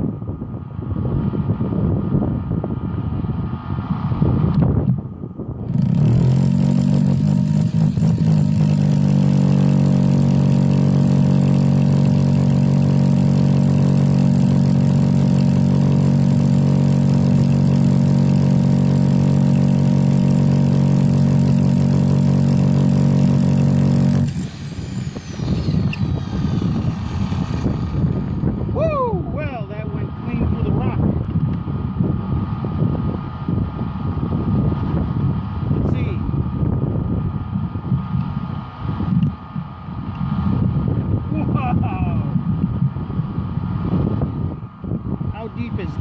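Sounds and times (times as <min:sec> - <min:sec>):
wind noise on microphone: 0:00.0 - 0:46.0
rotary hammer drilling into rock: 0:05.6 - 0:28.2.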